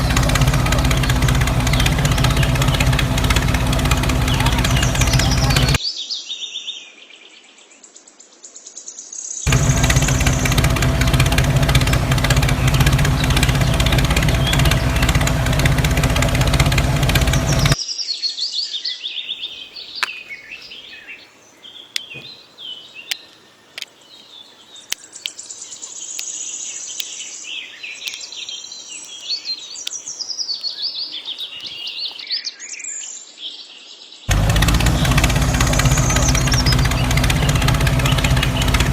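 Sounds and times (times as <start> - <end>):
birds chirping: 0.0 - 5.8, 9.5 - 17.9, 19.2 - 33.3, 34.3 - 38.9
loud steady motor: 0.0 - 5.8, 9.5 - 17.8, 34.3 - 38.9
sharp clicks: 0.0 - 5.8, 9.5 - 17.8, 28.0 - 28.3.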